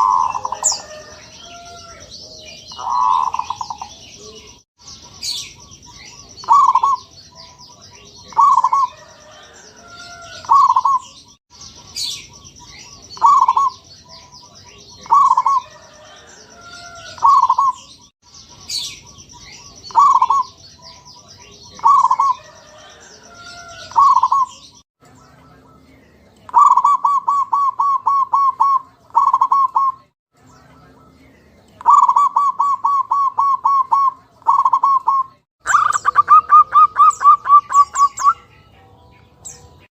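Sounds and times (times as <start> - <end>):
dove cooing: 0.0 - 4.5, 6.0 - 7.1, 8.1 - 11.2, 13.2 - 13.8, 14.9 - 17.9, 19.6 - 20.6, 21.6 - 24.6, 26.5 - 30.0, 31.8 - 38.4.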